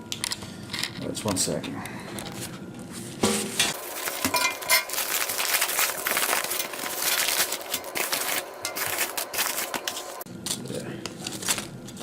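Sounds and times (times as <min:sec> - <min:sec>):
plastic wrapping crinkling: 0:03.7 - 0:12.0.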